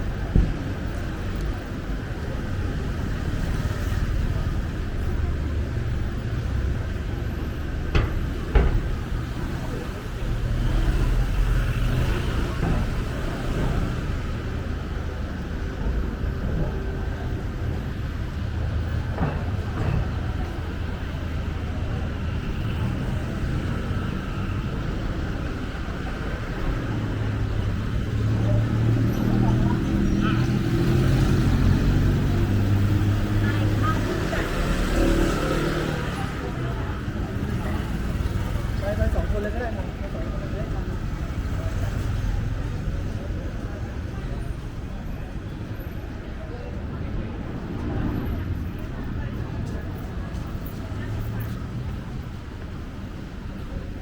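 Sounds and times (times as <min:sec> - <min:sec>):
traffic rumble: 0:00.0 - 0:54.0
sharp knocks: 0:07.9 - 0:09.5.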